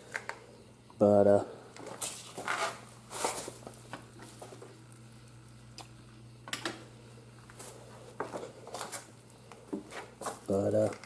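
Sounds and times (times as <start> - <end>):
steady low hum: 0.0 - 11.0
plastic parts clicking and rustling: 10.7 - 11.0.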